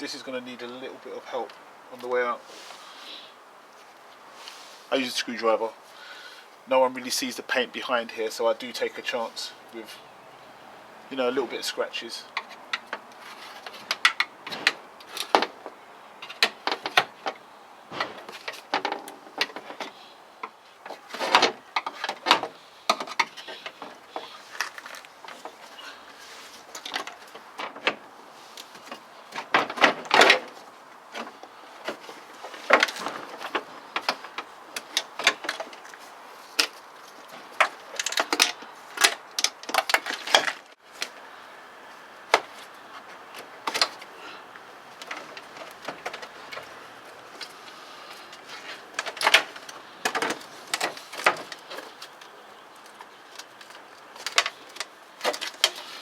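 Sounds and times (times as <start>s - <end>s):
hand tools clicking and knocking: 12.3s - 26.0s, 28.6s - 40.7s, 48.3s - 56.0s
metal and plastic scraping: 12.3s - 41.2s, 44.9s - 56.0s.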